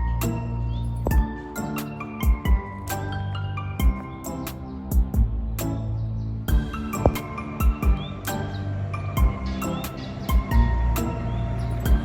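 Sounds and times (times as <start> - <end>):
drum beat: 1.1 - 1.3, 2.2 - 2.7, 4.9 - 5.4, 6.5 - 8.1, 10.3 - 10.6
sustained chords: 6.2 - 12.0.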